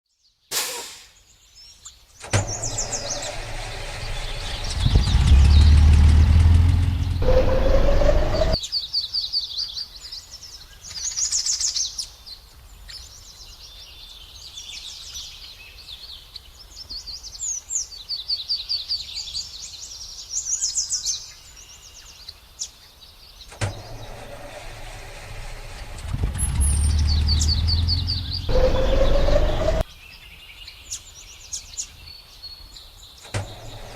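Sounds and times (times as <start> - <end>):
small birds chirping: 0.1 - 33.9
low running sound rising tone: 2.5 - 8.6, 23.8 - 29.8.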